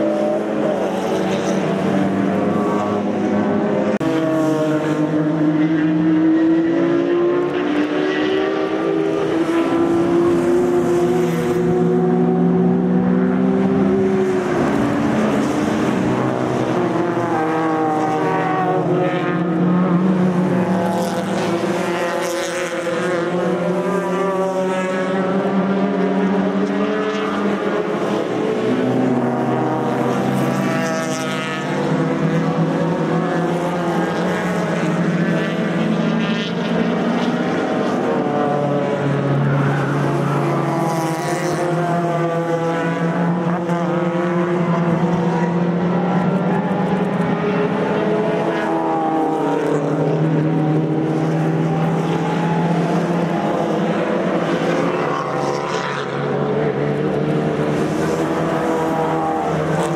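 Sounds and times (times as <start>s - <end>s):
racing cars passing: 0.0s - 59.9s.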